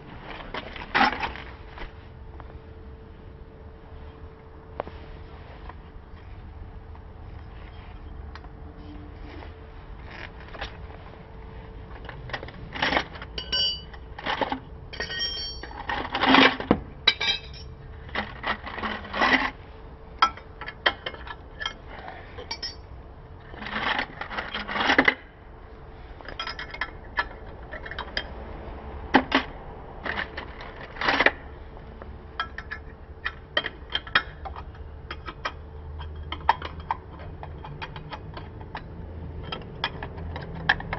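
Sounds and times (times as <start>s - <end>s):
metal tools clinking: 12.8s - 19.4s, 20.2s - 22.9s, 26.2s - 28.3s.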